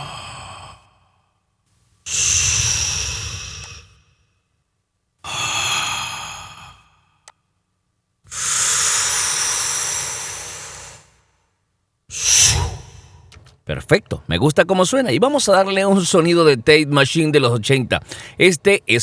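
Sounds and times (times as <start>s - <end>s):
breathy exhale with reverb: 2.1s - 4.4s, 8.3s - 11.5s, 12.1s - 13.4s, 18.0s - 18.4s.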